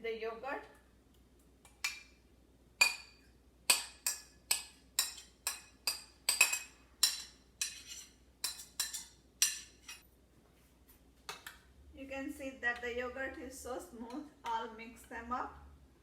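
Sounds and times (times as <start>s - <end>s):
metal spoon clinking on vessel: 2.8s - 10.0s.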